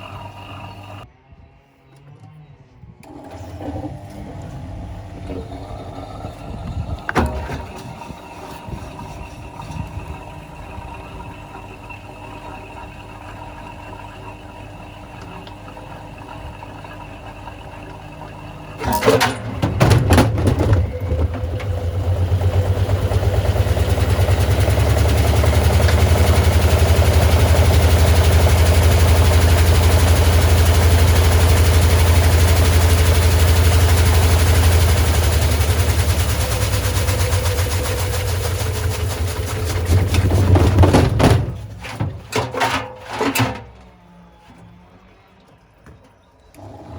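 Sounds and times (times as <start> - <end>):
washing machine motor hum: 0.0 - 1.0, 3.0 - 43.0
washing machine drum spinning: 3.3 - 43.0
sharp knocks in washing machine: 18.8 - 21.5, 37.6 - 42.3.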